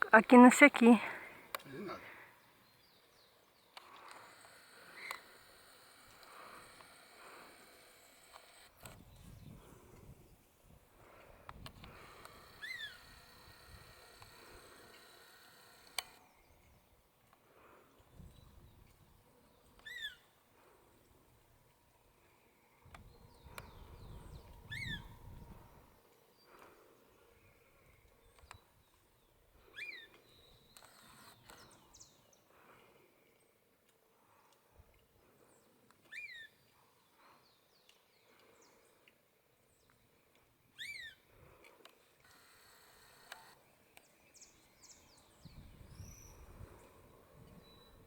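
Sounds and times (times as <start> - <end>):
bird calls rising and falling: 12.0 - 16.2
faint bird chirps: 19.5 - 20.3, 22.2 - 25.5, 43.5 - 48.0.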